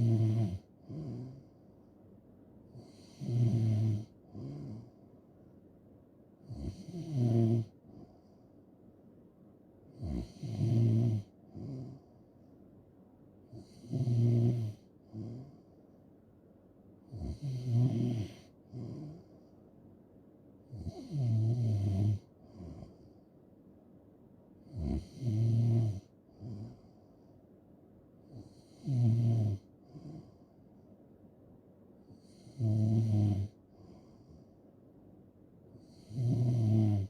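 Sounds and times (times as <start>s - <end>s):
person snoring: 0.0s - 1.5s, 2.8s - 4.9s, 6.5s - 7.8s, 10.0s - 12.0s, 13.6s - 15.6s, 17.1s - 19.2s, 20.8s - 23.0s, 24.7s - 26.8s, 28.3s - 30.4s, 32.2s - 33.6s, 35.8s - 37.0s.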